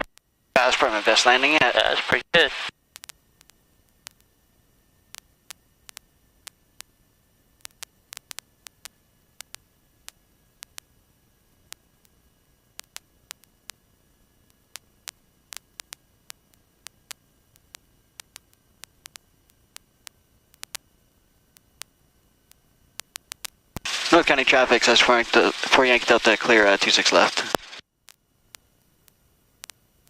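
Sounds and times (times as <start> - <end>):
radio static clicks and crackles: 0.0 - 4.4, 5.1 - 7.0, 7.6 - 30.0
radio static hiss: 0.0 - 4.4, 14.5 - 29.8.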